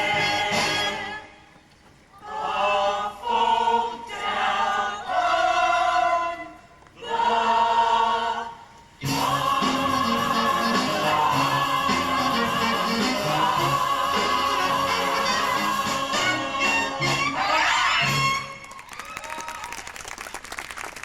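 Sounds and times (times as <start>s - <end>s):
musical accompaniment: 0.0s - 1.2s, 9.0s - 18.7s
cast singing in chorus: 2.2s - 17.6s.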